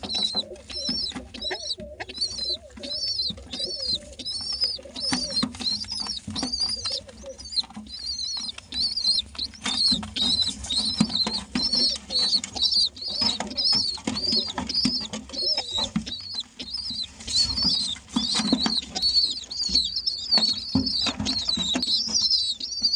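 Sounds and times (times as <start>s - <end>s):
squabs squeaky begging calls: 0.0s - 22.9s
wings flapping: 0.0s - 22.9s.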